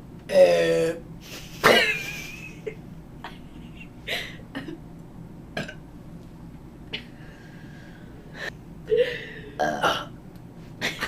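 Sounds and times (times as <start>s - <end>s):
woman burping softly: 5.6s - 5.8s.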